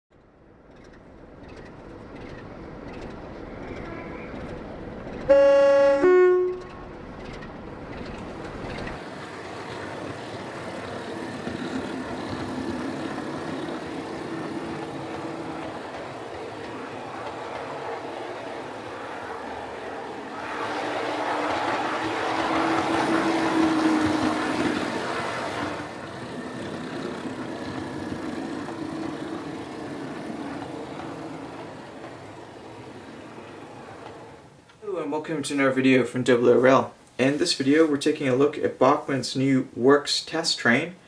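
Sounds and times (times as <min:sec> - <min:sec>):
train rumbling: 0:00.2 - 0:39.3
two-tone train horn: 0:05.3 - 0:06.8.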